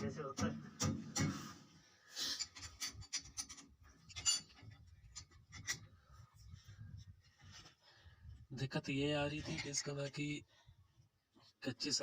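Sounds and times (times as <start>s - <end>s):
hand tools clicking and scraping: 2.2s - 5.9s.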